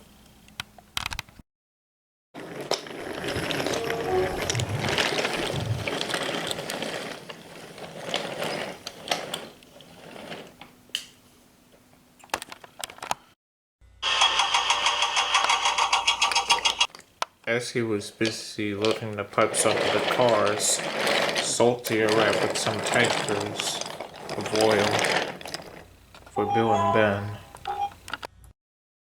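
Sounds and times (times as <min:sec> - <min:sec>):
toy mechanism clicking and clattering: 0:02.4 - 0:09.5, 0:14.2 - 0:17.5, 0:18.2 - 0:28.3.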